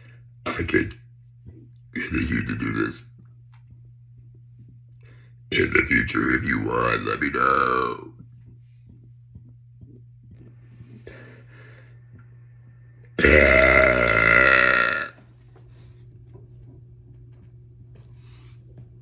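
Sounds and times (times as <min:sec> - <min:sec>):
man burping: 0:13.2 - 0:15.2.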